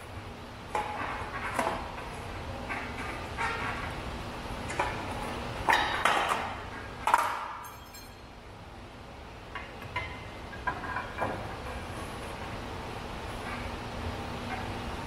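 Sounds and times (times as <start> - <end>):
metal tools clanking: 7.6 - 8.4.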